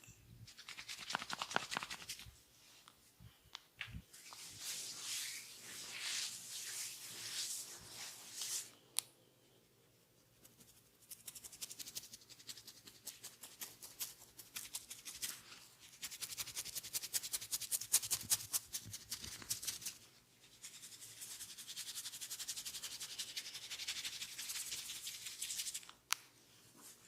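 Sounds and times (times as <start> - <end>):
hands rubbing oiled hair: 0.5 - 2.3, 4.1 - 8.7.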